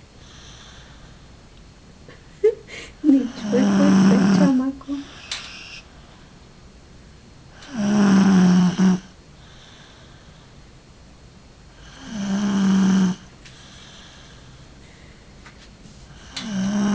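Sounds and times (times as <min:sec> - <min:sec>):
person snoring: 0:03.1 - 0:05.8, 0:07.6 - 0:09.1, 0:11.8 - 0:13.3, 0:16.2 - 0:16.9.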